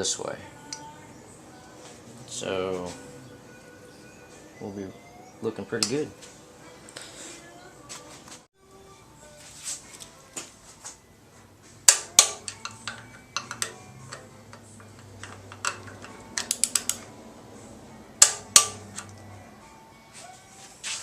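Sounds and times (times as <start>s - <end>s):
metal tools clinking on engine: 12.1s - 16.9s.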